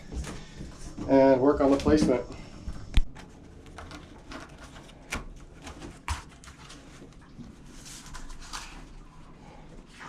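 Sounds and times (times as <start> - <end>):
plastic pipe parts knocking and scraping: 3.0 - 8.9.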